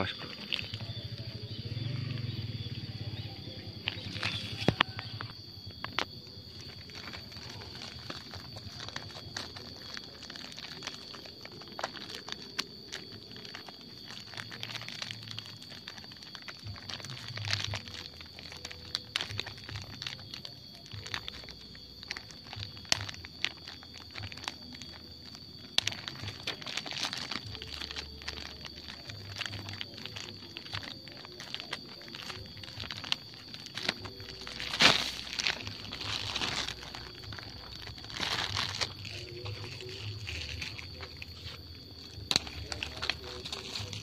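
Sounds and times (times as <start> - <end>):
steady high-pitched tone: 0.0 - 14.2, 18.2 - 44.0
plastic container being handled: 21.0 - 44.0.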